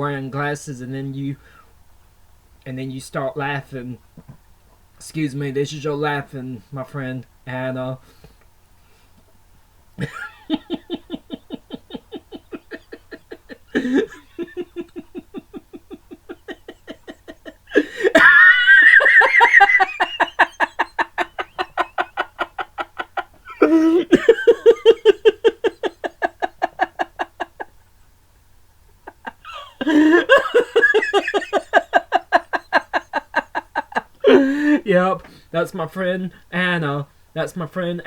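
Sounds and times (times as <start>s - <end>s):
man imitating woman's laugh: 10.0s - 27.7s, 29.0s - 34.9s
gasping in-breaths: 17.7s - 18.2s, 34.2s - 35.5s.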